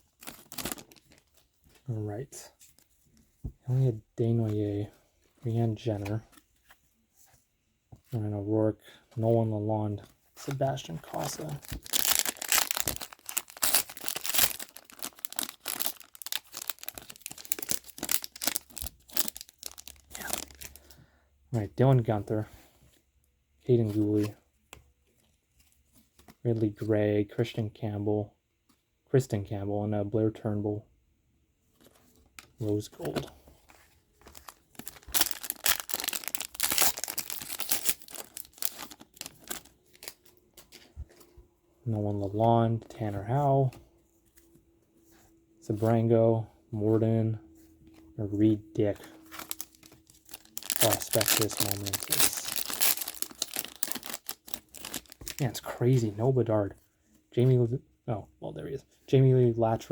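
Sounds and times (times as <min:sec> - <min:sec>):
card pack wrapper crinkling: 0:00.0 - 0:01.4, 0:10.4 - 0:20.9, 0:32.4 - 0:40.9, 0:48.8 - 0:55.6.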